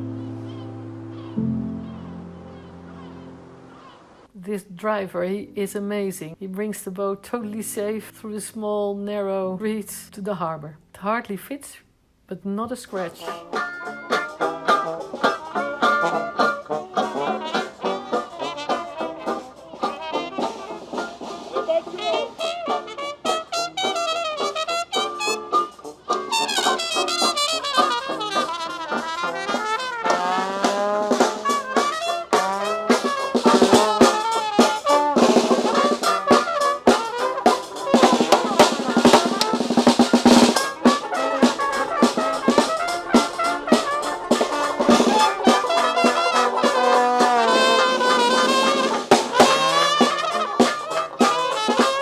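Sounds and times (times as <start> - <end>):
brass band playing: 13.3 - 52.0.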